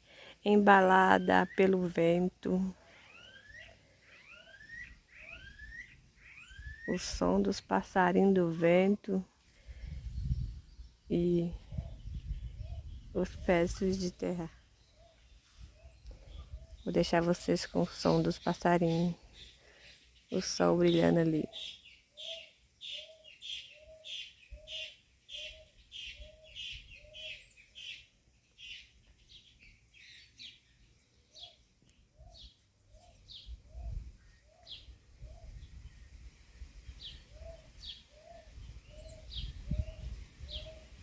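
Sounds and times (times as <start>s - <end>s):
bird hooting: 2.9s - 6.9s, 21.4s - 28.0s
high bird chirps: 3.0s - 7.0s
wind rumble on microphone: 9.6s - 14.4s, 33.3s - 41.0s.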